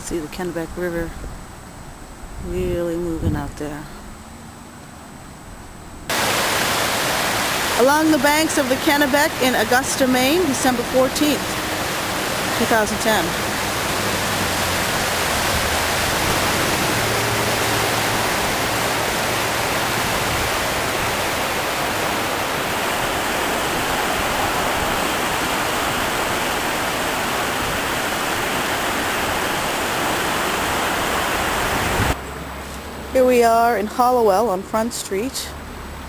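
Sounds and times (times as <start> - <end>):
river rushing: 6.1 - 34.6.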